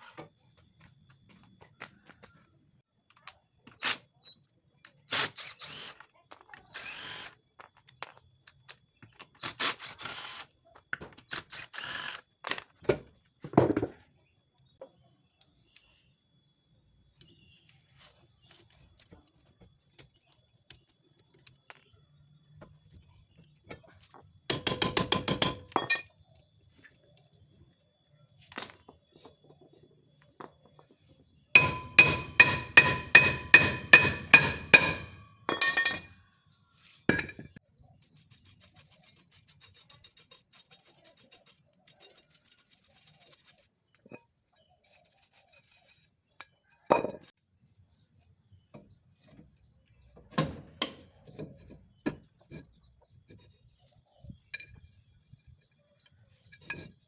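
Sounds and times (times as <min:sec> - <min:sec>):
metal striking metal: 0:31.6 - 0:36.1.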